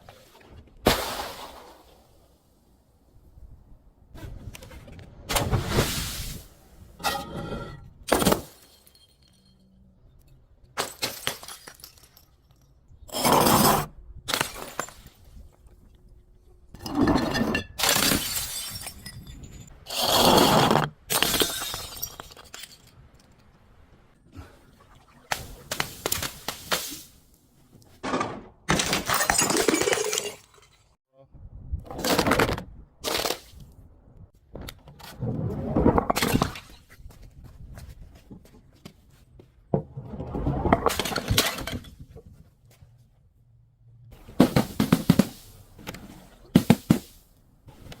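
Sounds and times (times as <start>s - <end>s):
glass bottles breaking: 8.2s - 9.7s, 10.8s - 12.6s, 16.8s - 19.7s, 21.1s - 23.0s, 28.7s - 30.9s.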